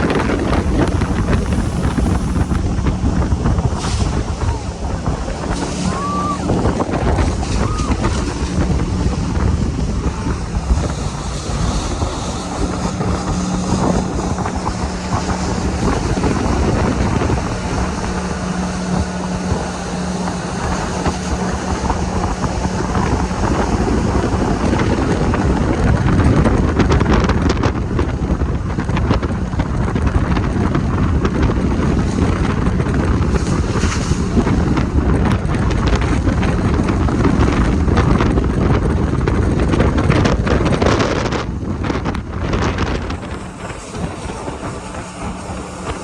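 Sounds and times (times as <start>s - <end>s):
boat engine and water roar: 0.0s - 46.0s
wind buffeting microphone: 0.0s - 46.0s.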